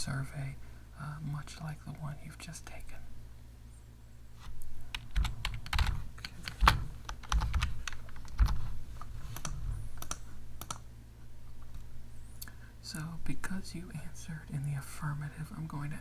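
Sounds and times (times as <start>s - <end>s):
typing on computer keyboard: 4.9s - 8.6s.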